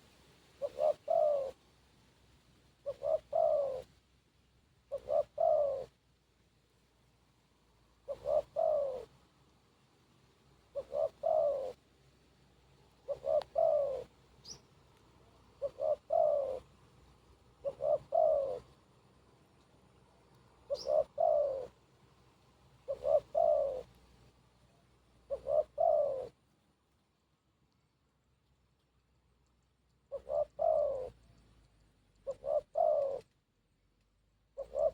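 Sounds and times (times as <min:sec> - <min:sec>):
dove cooing: 0:00.0 - 0:01.6, 0:02.7 - 0:04.0, 0:04.8 - 0:06.0, 0:08.0 - 0:09.2, 0:10.6 - 0:11.9, 0:12.8 - 0:19.0, 0:20.0 - 0:21.9, 0:22.8 - 0:26.4, 0:30.0 - 0:33.4, 0:34.5 - 0:34.9
small bird chirping: 0:10.7 - 0:11.8, 0:13.0 - 0:16.7, 0:19.5 - 0:21.8, 0:22.8 - 0:23.9, 0:26.9 - 0:34.9.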